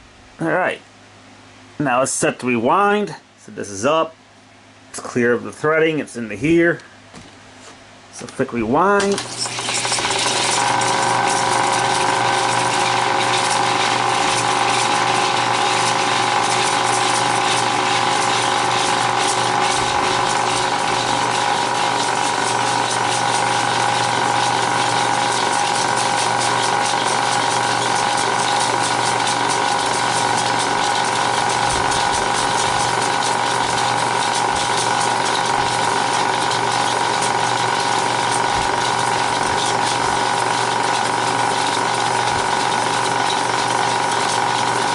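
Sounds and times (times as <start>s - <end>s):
film projector rewinding: 9.0s - 44.9s.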